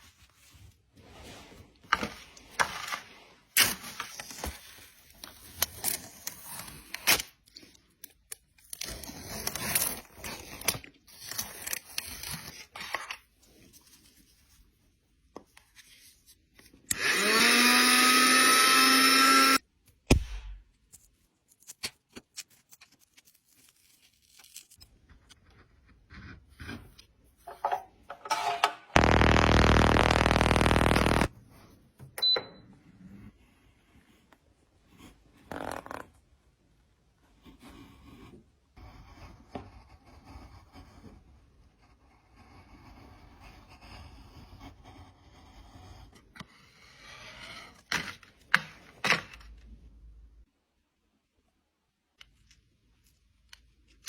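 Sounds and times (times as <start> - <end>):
soft scraping and rustling: 0.0 - 3.5
small electric motor running: 17.0 - 19.6, 29.0 - 31.3.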